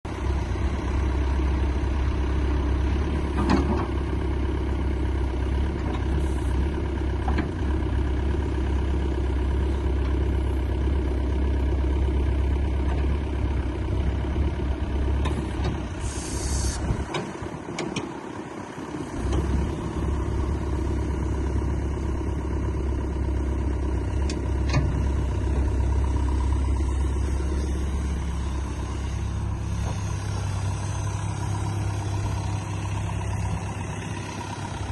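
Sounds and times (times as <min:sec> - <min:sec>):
excavator diesel engine idling: 0:00.1 - 0:34.9
short hiss: 0:16.0 - 0:17.0.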